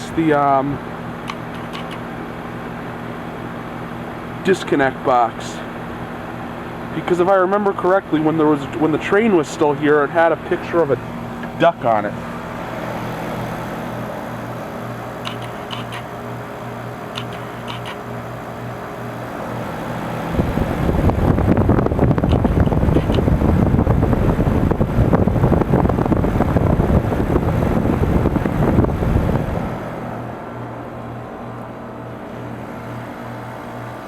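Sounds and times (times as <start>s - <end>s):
heat pump humming: 0.0s - 34.0s
air buffeting microphone: 20.0s - 30.2s.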